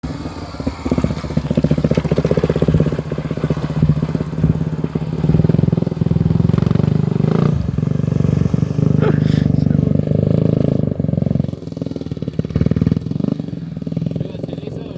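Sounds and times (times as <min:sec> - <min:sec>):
motorcycle engine chugging: 0:00.0 - 0:14.9.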